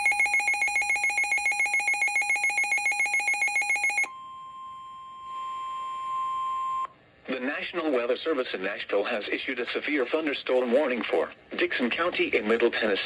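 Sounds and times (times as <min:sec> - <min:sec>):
shrill rapidly pulsing beep: 0:00.0 - 0:04.1
steady single-pitch alert tone: 0:00.0 - 0:06.2.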